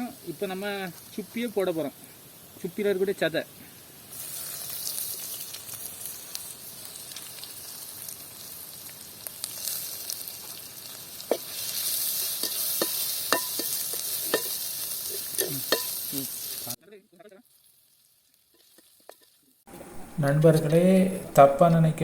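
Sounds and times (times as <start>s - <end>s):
shellfish sizzling in hot oil: 0.0s - 19.7s
spoon clinking and scraping pot: 11.3s - 16.1s.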